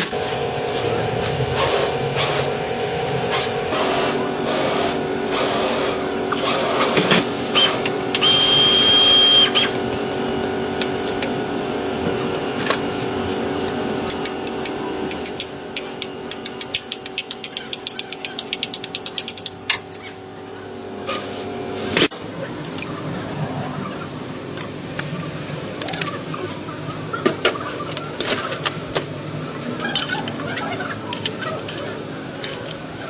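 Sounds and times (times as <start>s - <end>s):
steady machine hum: 0.0s - 33.0s
ratchet wrench clicking: 14.1s - 20.0s.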